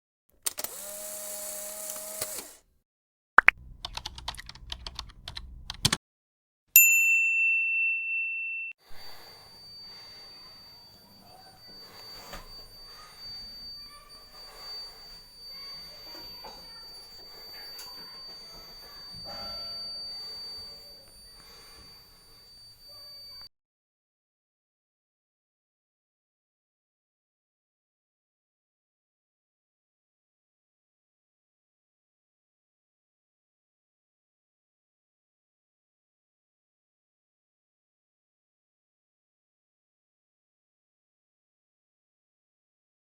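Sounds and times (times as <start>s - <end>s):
typing-like clicks: 0.4s - 2.6s, 3.4s - 6.0s
bell-like ding: 6.8s - 23.5s
thin high whine: 8.8s - 23.5s.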